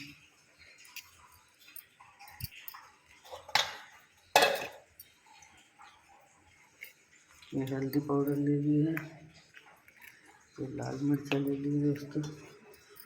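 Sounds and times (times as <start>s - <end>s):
kitchen utensils clicking and tapping: 0.0s - 5.2s, 6.7s - 13.0s
utensils clattering: 0.8s - 5.0s, 10.0s - 13.0s.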